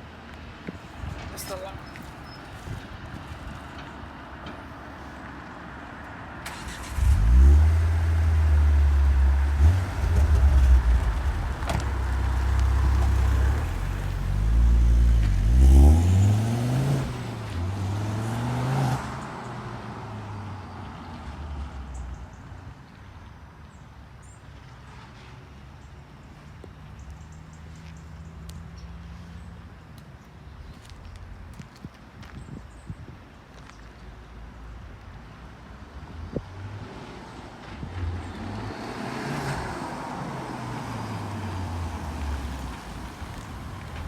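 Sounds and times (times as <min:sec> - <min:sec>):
car engine starting and revving: 0:06.4 - 0:22.0, 0:36.6 - 0:44.0.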